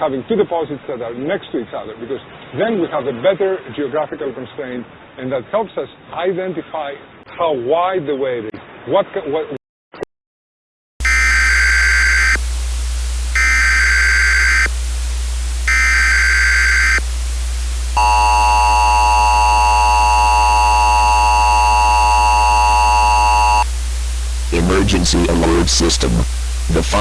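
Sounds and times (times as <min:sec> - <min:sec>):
two-tone attention signal: 0:11.0 - 0:12.4, 0:15.7 - 0:17.0, 0:18.0 - 0:23.7
buzzing digital data bursts: 0:11.0 - 0:27.0
low hum: 0:11.0 - 0:27.0.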